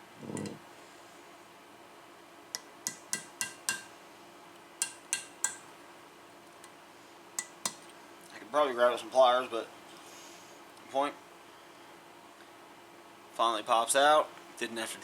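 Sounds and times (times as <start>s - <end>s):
metal-on-metal taps with ring: 2.6s - 3.9s, 4.8s - 5.7s, 7.4s - 7.9s.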